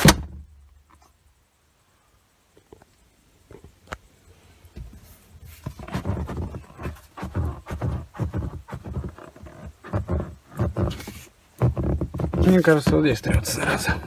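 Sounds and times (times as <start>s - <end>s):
leather creaking at seat joint: 4.8s - 14.0s.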